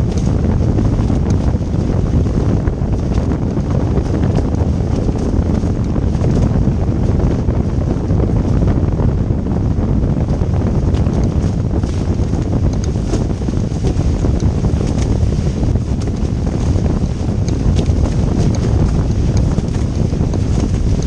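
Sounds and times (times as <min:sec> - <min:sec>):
wind buffeting microphone: 0:00.0 - 0:21.0.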